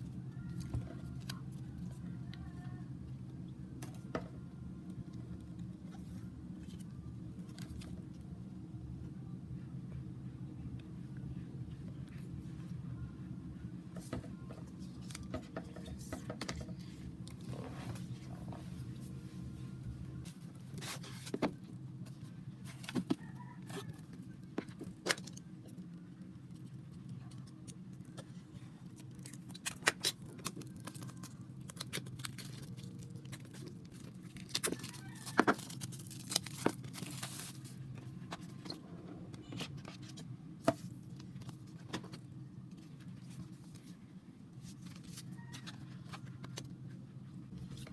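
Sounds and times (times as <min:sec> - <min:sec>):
steady low hum: 0:00.0 - 0:47.9
plastic and card clicks and crinkles: 0:00.3 - 0:02.6, 0:05.1 - 0:08.2, 0:14.0 - 0:18.1, 0:20.3 - 0:44.0, 0:44.6 - 0:46.8, 0:47.5 - 0:47.9.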